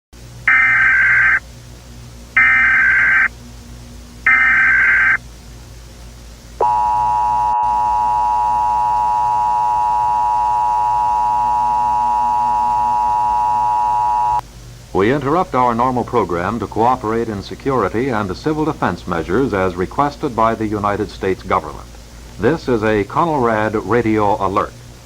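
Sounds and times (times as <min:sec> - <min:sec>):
two-tone attention signal: 0:00.5 - 0:01.4, 0:02.4 - 0:03.3, 0:04.3 - 0:05.2, 0:06.6 - 0:14.4
warbling digital data tones: 0:00.5 - 0:01.4, 0:02.4 - 0:03.3, 0:04.2 - 0:05.2.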